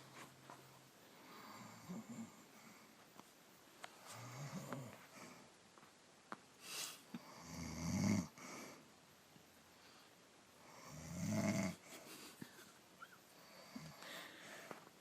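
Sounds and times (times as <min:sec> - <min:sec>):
woman snoring: 0:04.1 - 0:05.0, 0:07.2 - 0:08.4, 0:10.6 - 0:11.8
breathy hiss: 0:06.6 - 0:07.5.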